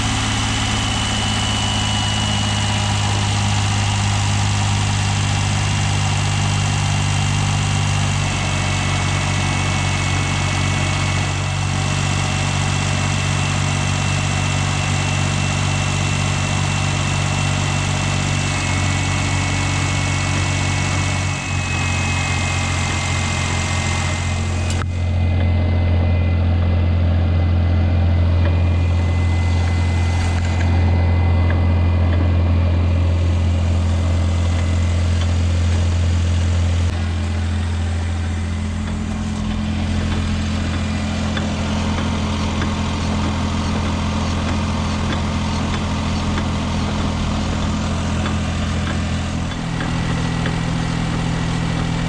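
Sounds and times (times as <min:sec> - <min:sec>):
car engine droning: 0:00.0 - 0:52.0.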